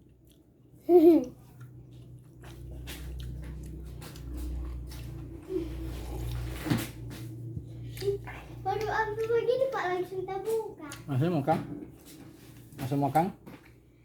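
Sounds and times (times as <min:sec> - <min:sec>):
person chewing noodles: 0:00.0 - 0:06.6
low steady hum: 0:00.0 - 0:14.0.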